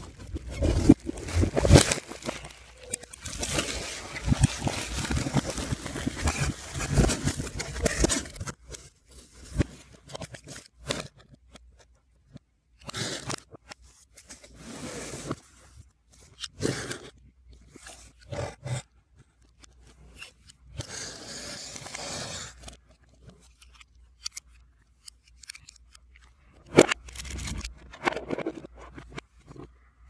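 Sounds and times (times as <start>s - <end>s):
reversed packaging crinkling: 0.0s - 10.8s, 25.4s - 29.7s.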